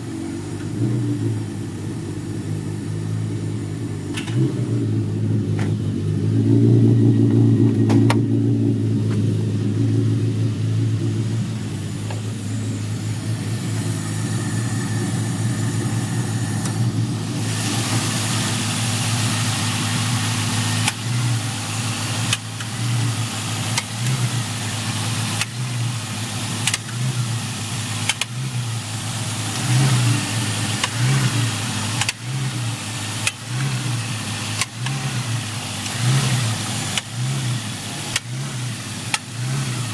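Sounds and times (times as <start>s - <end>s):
car engine idling: 0.0s - 39.9s
engine clunking knock: 4.0s - 9.8s.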